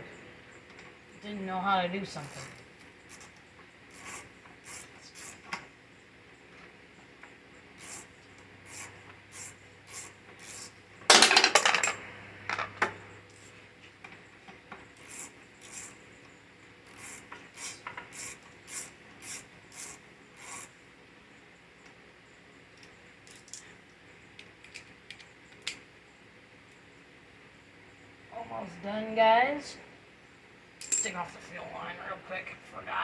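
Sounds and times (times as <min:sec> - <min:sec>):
hand tool scraping: 0:02.2 - 0:05.6, 0:16.9 - 0:20.8.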